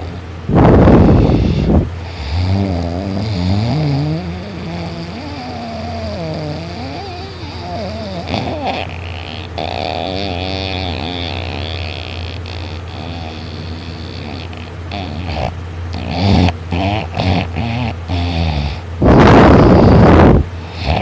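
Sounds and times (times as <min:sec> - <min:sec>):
steady low hum: 0:00.0 - 0:21.0
person snoring: 0:00.8 - 0:21.0.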